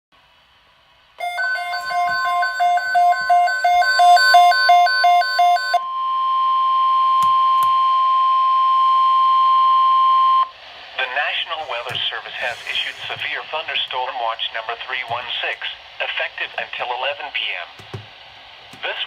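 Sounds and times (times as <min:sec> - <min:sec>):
steady warning alarm tone: 0:01.2 - 0:13.3.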